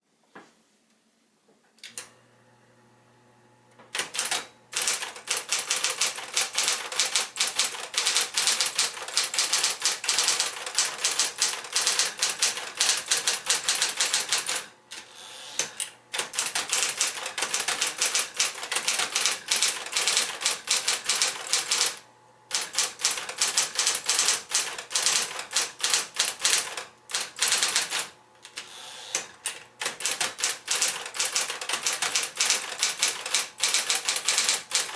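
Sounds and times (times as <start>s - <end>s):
rapid typewriter keystrokes: 3.9s - 15.0s, 15.6s - 34.9s
typewriter motor humming: 3.9s - 34.9s.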